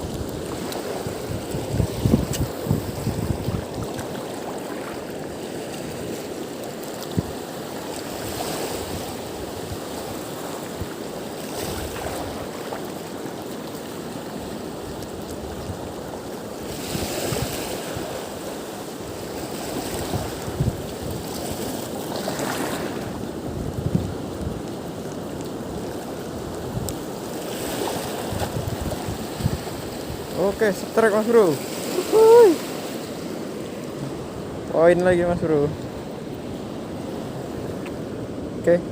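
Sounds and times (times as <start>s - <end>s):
water rushing: 0.0s - 38.9s
wind rushing: 1.0s - 3.8s.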